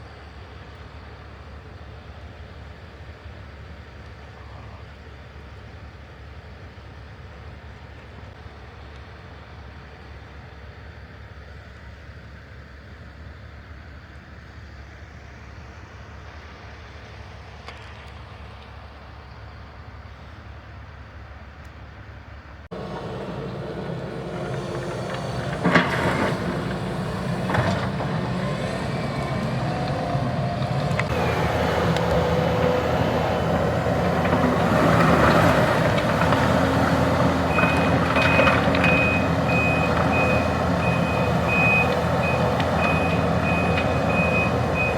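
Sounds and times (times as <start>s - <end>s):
heavy truck engine running: 22.7s - 44.9s
truck reversing beeper: 22.7s - 44.9s.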